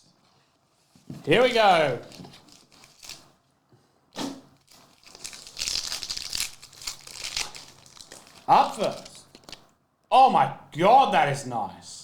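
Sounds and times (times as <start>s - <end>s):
foil wrapper crinkling: 1.4s - 3.4s, 4.6s - 9.7s
foil wrapper tearing: 1.5s - 3.4s, 4.6s - 9.6s.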